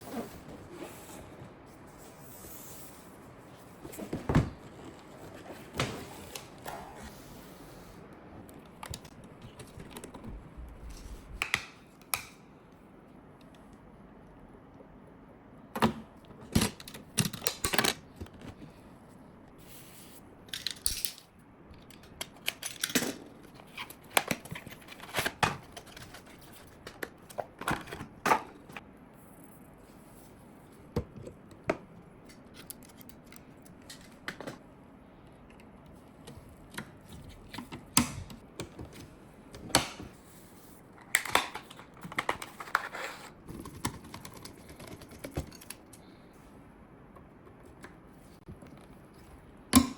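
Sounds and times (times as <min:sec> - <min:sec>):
computer parts clicking and rattling: 0:43.5 - 0:46.0.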